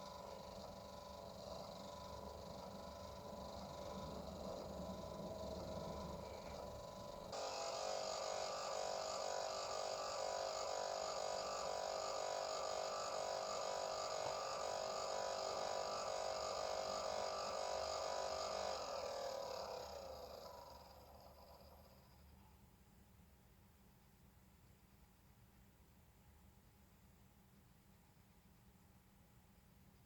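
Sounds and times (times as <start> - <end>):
multi-tone electronic buzz: 0.0 - 16.2.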